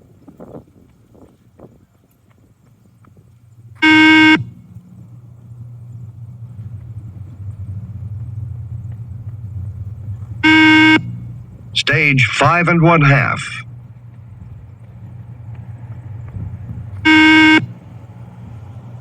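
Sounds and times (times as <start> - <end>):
low steady hum: 0.0 - 19.0
loud electronic beep: 3.8 - 4.5, 10.4 - 11.2, 11.8 - 13.6, 17.0 - 17.7.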